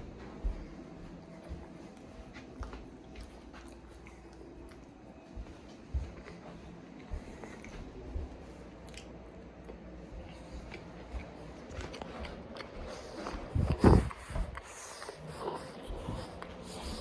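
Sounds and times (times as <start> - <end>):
chewing cookie crunching: 1.9 - 5.2, 7.0 - 17.0.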